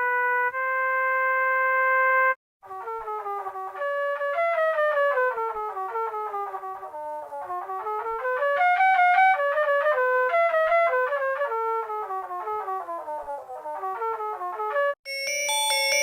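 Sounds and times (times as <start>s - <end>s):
phone ringtone melody: 15.1s - 16.0s.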